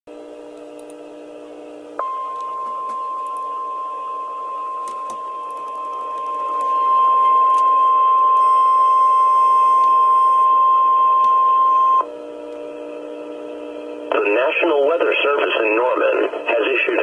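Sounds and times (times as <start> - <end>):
steady high alarm tone: 2.0 - 12.1
radio hiss: 14.1 - 17.0.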